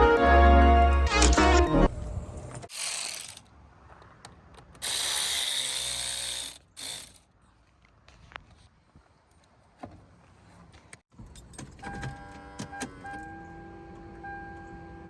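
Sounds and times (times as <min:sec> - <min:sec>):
ratchet wrench clicking: 0:02.7 - 0:03.4, 0:04.8 - 0:07.2.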